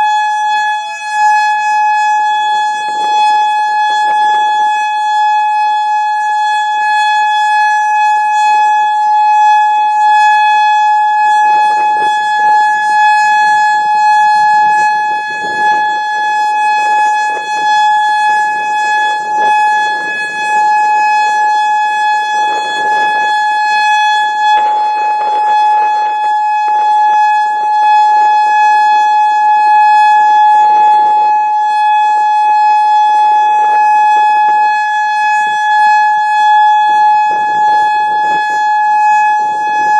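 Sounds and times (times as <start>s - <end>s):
steady warning siren tone: 0.0s - 39.9s.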